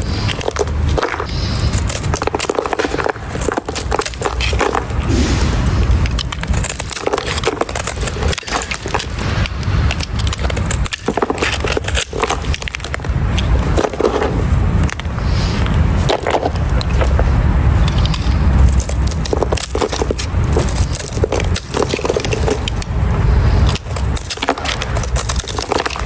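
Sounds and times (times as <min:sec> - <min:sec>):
low rumble: 0:04.9 - 0:07.0.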